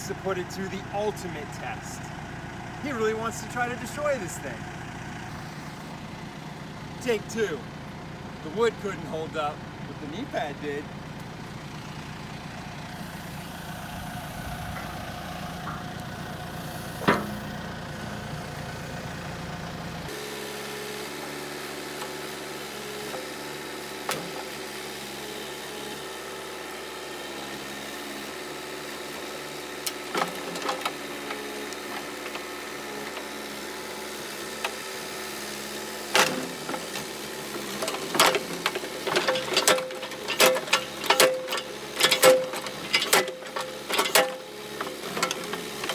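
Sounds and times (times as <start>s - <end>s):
diesel engine running: 0.0s - 45.9s
sharp clicks and knocks: 36.2s - 45.9s.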